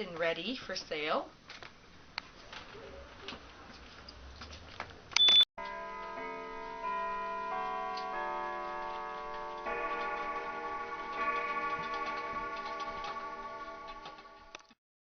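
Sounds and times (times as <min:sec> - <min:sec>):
clocks ticking: 0:05.6 - 0:14.7
slow chord melody: 0:05.6 - 0:14.7.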